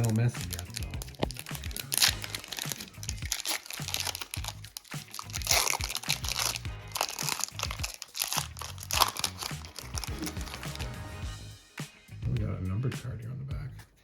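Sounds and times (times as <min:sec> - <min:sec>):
foil wrapper crinkling: 0:00.0 - 0:11.0
background music with steady beat: 0:00.0 - 0:14.0.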